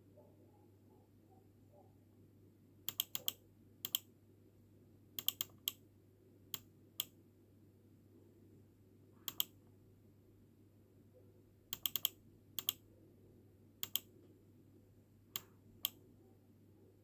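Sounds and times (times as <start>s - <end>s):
sharp clicks from computer: 2.9s - 4.1s, 5.2s - 5.8s, 9.3s - 9.6s, 11.8s - 12.8s, 13.8s - 14.1s.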